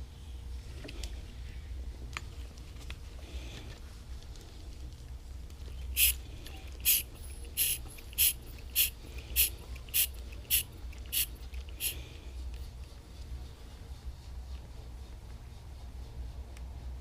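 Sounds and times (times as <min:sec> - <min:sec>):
hand vacuum pump squeezing: 0:06.8 - 0:12.0.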